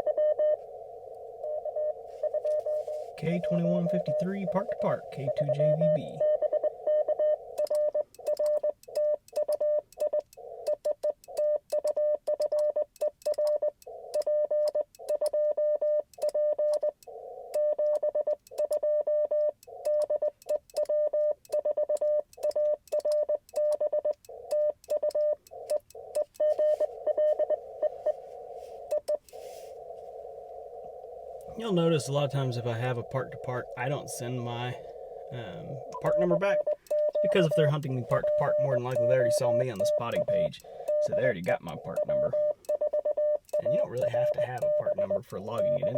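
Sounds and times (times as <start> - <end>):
receiver hiss: 0.0 - 6.2, 26.4 - 42.4
morse code tone: 1.4 - 16.9, 20.8 - 29.6, 31.5 - 45.9.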